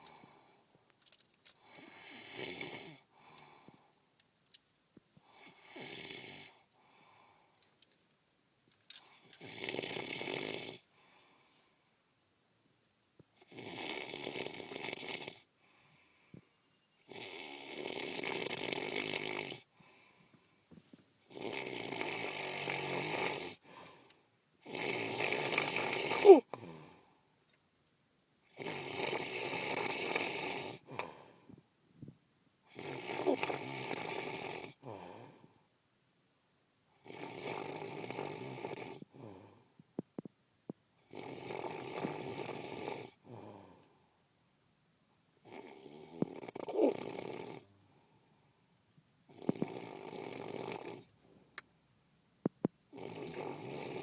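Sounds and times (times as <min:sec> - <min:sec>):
person snoring heavily: 0:01.6 - 0:03.9, 0:05.3 - 0:07.2, 0:09.1 - 0:11.3, 0:13.4 - 0:15.4, 0:17.1 - 0:19.7, 0:21.3 - 0:24.0, 0:24.6 - 0:27.1, 0:28.5 - 0:31.3, 0:32.7 - 0:35.5, 0:37.0 - 0:39.6, 0:41.1 - 0:43.8, 0:45.4 - 0:48.1, 0:49.3 - 0:51.1, 0:52.9 - 0:54.0.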